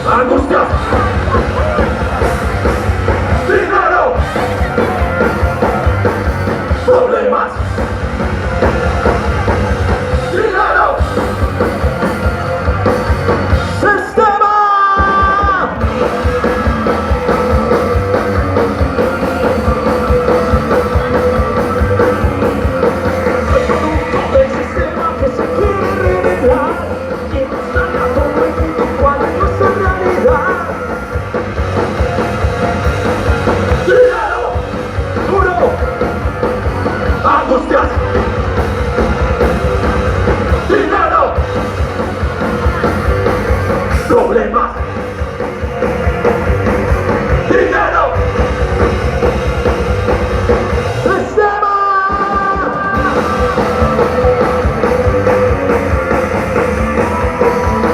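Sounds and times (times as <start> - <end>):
band playing loud rock music: 0.0 - 57.9
sung and shouted vocals: 51.0 - 55.7.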